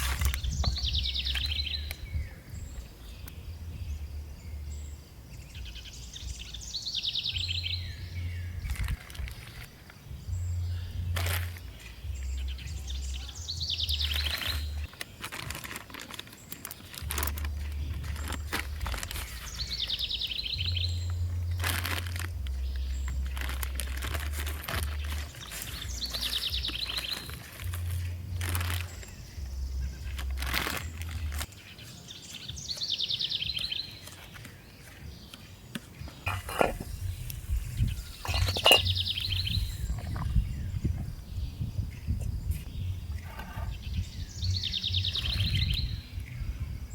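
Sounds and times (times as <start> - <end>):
clicks and rustles: 14.2 - 19.7, 34.0 - 40.3
bird trilled call: 36.2 - 40.2.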